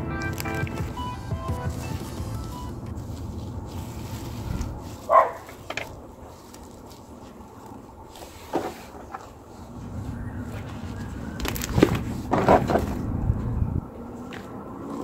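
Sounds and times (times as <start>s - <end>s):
dog barking: 5.1s - 5.5s.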